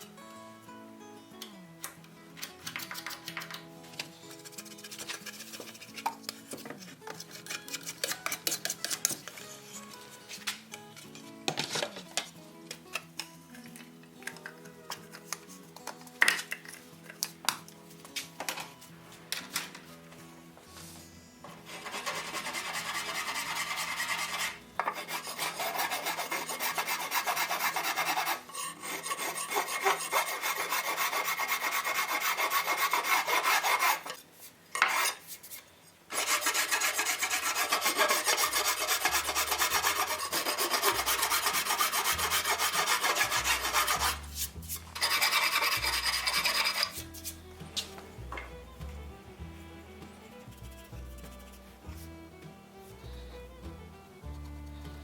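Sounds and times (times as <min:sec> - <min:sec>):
hand rasp filing wood: 0:21.7 - 0:34.2, 0:34.8 - 0:35.3, 0:36.1 - 0:47.4.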